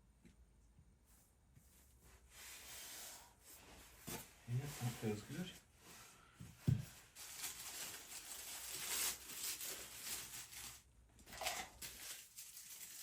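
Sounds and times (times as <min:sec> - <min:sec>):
packaging rustling and crinkling: 0:06.6 - 0:13.0.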